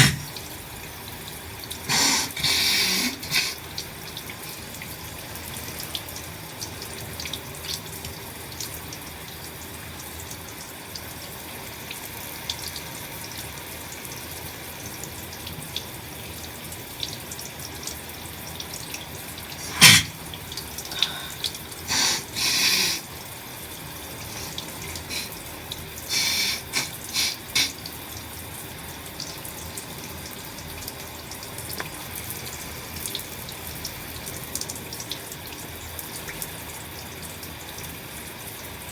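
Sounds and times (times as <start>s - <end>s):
nose blowing: 0.0s - 0.3s, 1.9s - 3.6s, 19.6s - 20.2s, 21.9s - 23.1s, 24.2s - 25.3s, 26.1s - 27.8s
person sneezing: 0.0s - 0.3s, 1.9s - 3.6s, 19.6s - 20.2s, 20.9s - 23.1s, 26.1s - 27.8s
shower water running: 0.0s - 38.9s.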